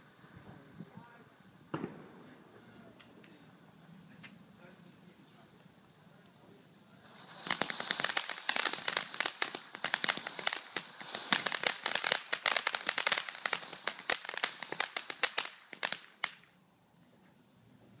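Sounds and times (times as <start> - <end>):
firecrackers banging: 1.7 - 4.4, 7.0 - 16.5.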